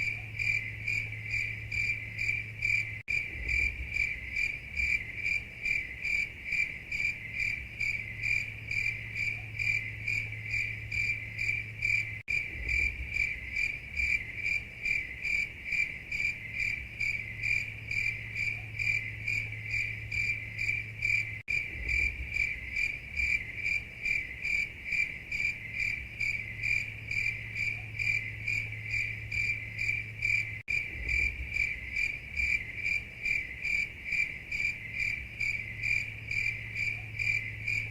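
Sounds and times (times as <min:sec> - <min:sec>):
crickets chirping: 0:00.0 - 0:37.9
low steady hum: 0:00.0 - 0:37.9.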